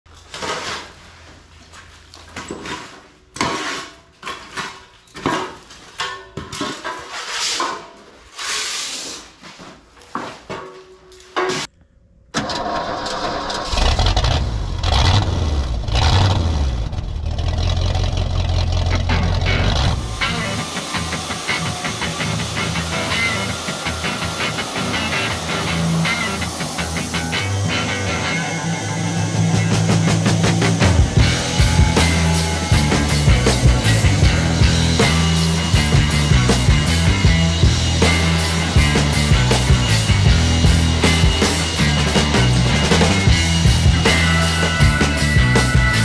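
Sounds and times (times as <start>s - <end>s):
engine starting and running: 12.3s - 46.0s.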